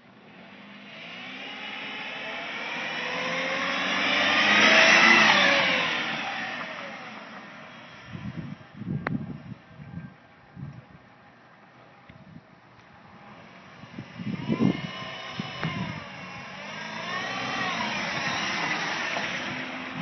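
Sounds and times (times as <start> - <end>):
car driving past: 0.3 - 8.3.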